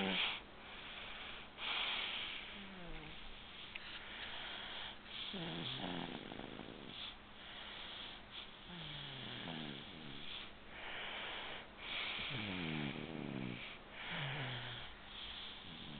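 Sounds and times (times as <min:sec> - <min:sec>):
person snoring: 0:00.0 - 0:00.4, 0:04.6 - 0:07.1, 0:08.6 - 0:11.4, 0:12.2 - 0:15.9.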